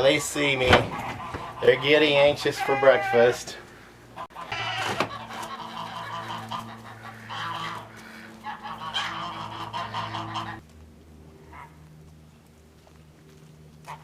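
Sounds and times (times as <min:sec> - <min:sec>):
geese honking: 0:00.0 - 0:10.6, 0:11.4 - 0:11.8
steady low hum: 0:00.0 - 0:14.0.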